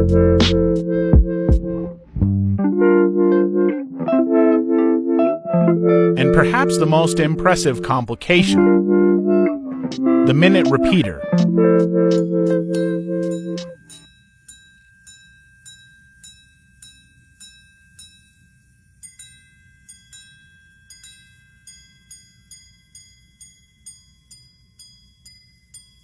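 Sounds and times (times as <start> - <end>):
pocket watch chiming on gongs: 12.2 - 26.0.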